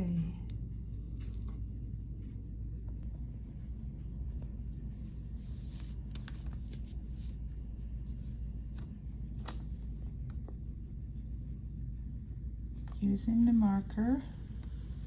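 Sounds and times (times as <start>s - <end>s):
steady low hum: 0.0s - 15.0s
paper rustling: 5.3s - 7.4s.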